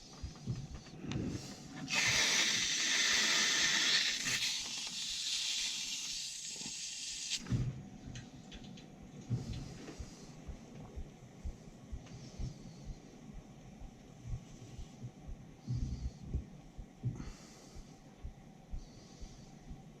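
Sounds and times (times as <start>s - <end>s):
water and air hissing out: 1.9s - 7.4s.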